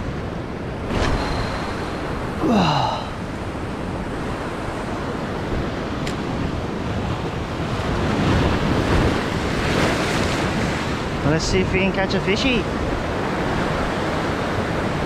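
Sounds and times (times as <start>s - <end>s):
ocean surf washing in: 0.0s - 15.0s
wind buffeting microphone: 3.2s - 11.3s.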